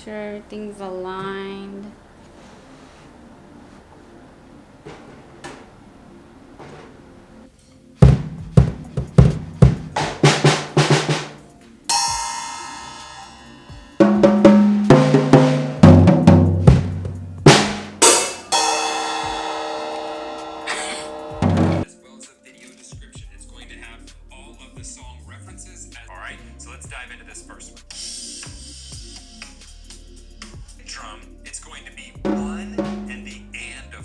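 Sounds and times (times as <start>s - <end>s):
acoustic drum kit playing: 8.0s - 21.9s, 32.2s - 34.0s
crash cymbals ringing: 11.9s - 15.8s, 18.0s - 21.9s, 32.3s - 33.8s.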